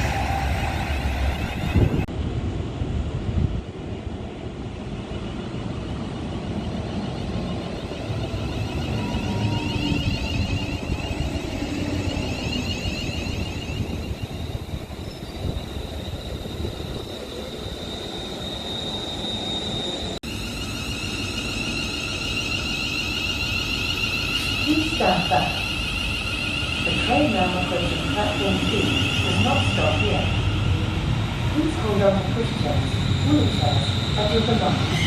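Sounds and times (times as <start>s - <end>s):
steady multi-tone high sound: 7.2s - 31.2s
high-pitched wheel squeal: 7.6s - 30.8s, 32.9s - 35.0s.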